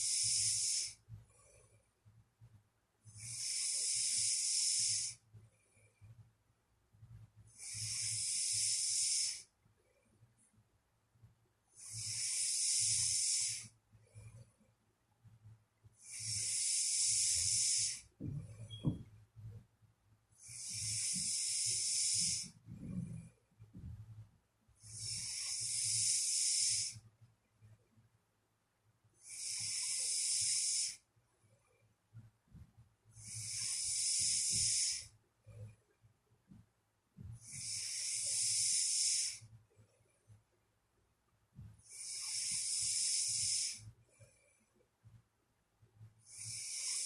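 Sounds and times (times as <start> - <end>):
person breathing while asleep: 0.0 - 1.8, 3.0 - 6.2, 7.5 - 9.5, 11.7 - 14.5, 16.0 - 19.0, 20.4 - 24.0, 24.8 - 27.1, 29.2 - 31.1, 33.1 - 35.8, 37.2 - 39.5, 41.6 - 44.4, 46.2 - 47.0
low snort: 11.8 - 13.7, 20.4 - 23.3, 41.8 - 43.8.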